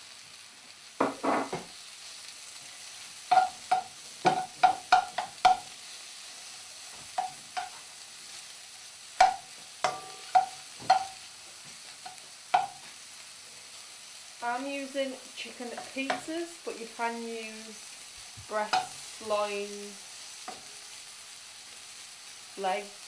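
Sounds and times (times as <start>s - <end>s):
food sizzling in a pan: 0.0s - 23.0s
utensil knocking against pan: 3.3s - 5.6s, 9.2s - 11.2s, 12.6s - 12.8s.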